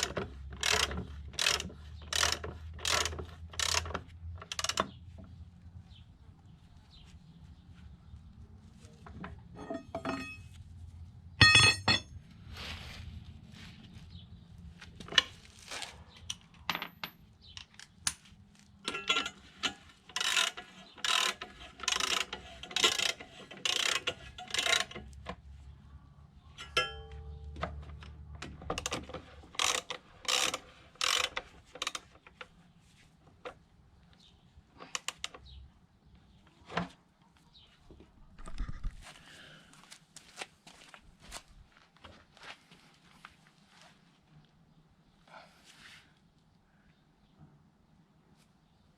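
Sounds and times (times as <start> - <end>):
tool knocks: 11.4 - 12.1.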